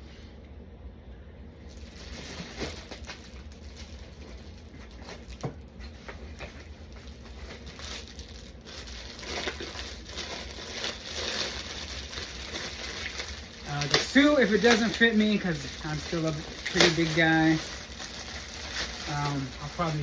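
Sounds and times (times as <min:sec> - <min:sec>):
rustling of items being unpacked: 0:01.6 - 0:20.0.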